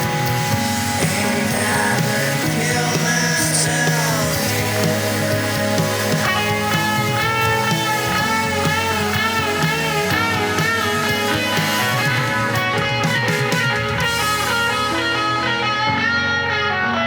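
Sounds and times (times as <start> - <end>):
rock music with guitar: 0.0 - 17.0.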